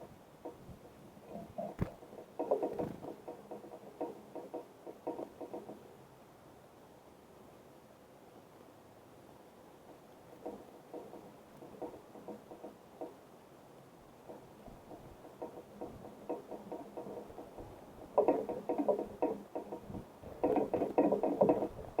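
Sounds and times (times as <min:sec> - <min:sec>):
light tapping and knocking: 0:00.4 - 0:05.9, 0:09.9 - 0:13.3, 0:14.1 - 0:22.0.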